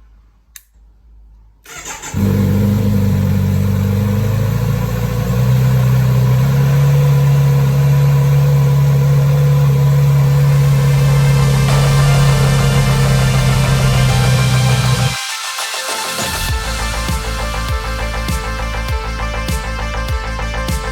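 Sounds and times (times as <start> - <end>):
motorcycle engine starter cranking: 1.7 - 4.2
motorcycle engine idling: 2.0 - 15.2.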